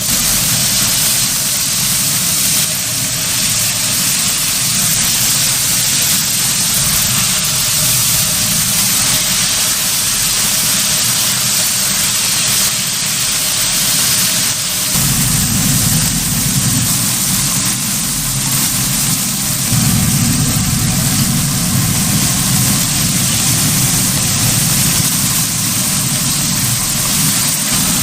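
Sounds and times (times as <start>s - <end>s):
food sizzling on a griddle: 0.0s - 28.0s
low hum: 14.9s - 28.0s.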